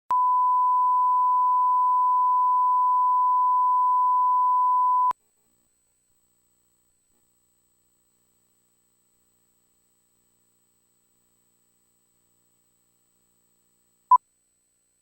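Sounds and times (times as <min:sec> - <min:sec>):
steady pure test beep: 0:00.1 - 0:05.1.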